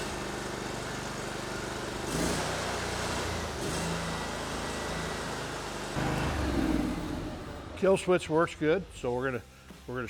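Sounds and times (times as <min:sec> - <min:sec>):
snowblower engine running: 0:00.0 - 0:09.8.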